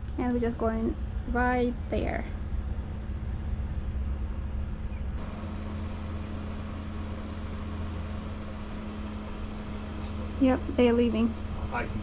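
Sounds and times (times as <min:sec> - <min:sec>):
diesel engine humming: 0:00.0 - 0:12.0.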